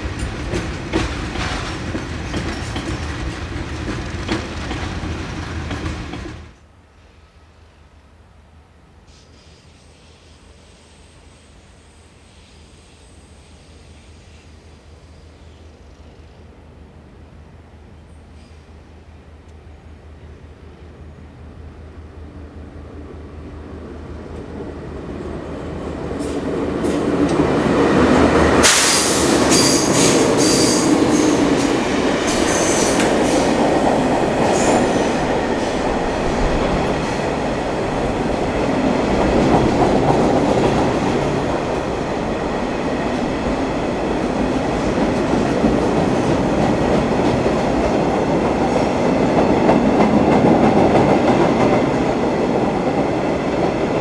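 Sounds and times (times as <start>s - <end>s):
train wheels on rails: 0.0s - 8.0s, 9.0s - 54.0s
high wheel squeal: 28.6s - 42.6s.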